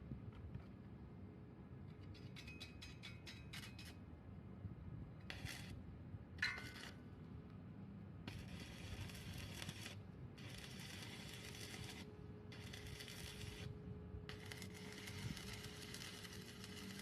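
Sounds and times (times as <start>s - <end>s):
faint steady hum: 3.9s - 17.0s.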